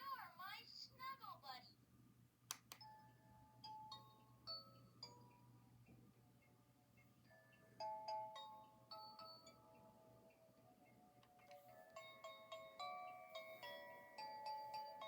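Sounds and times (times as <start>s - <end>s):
sharp clicks: 2.5s - 2.8s
toy playing chiming lullaby: 2.8s - 5.6s, 7.2s - 15.0s.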